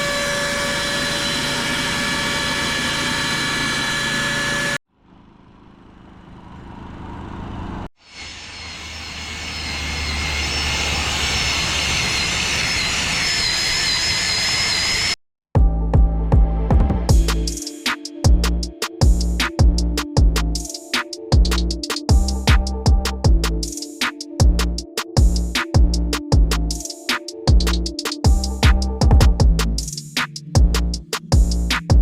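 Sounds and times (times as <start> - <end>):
motor machine whining: 0.0 - 4.8.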